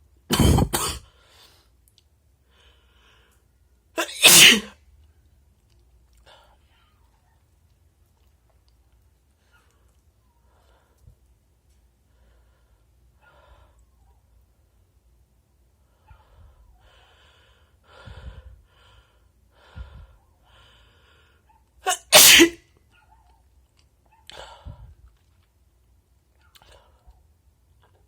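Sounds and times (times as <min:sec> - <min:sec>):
man sneezing: 0:00.3 - 0:01.0, 0:04.0 - 0:04.7, 0:21.9 - 0:22.6.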